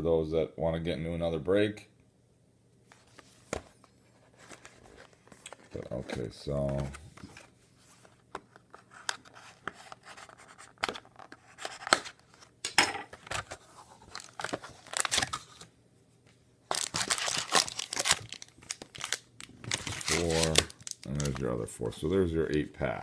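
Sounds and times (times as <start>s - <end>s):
packaging crinkling: 13.3s - 15.7s, 16.7s - 21.6s
wrap and cardboard tearing: 14.1s - 15.4s, 16.7s - 21.4s.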